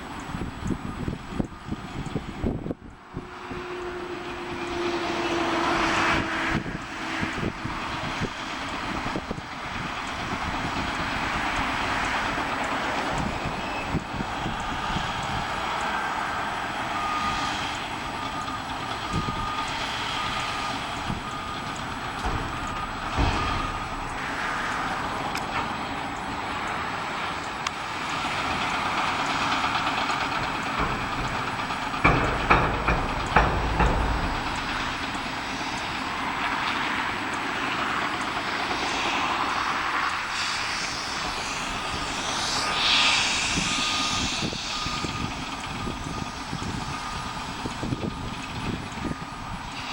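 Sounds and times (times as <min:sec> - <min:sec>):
heavy construction machinery running: 0:00.0 - 0:49.9
metal clanks and knocks: 0:20.9 - 0:25.8, 0:29.8 - 0:36.9.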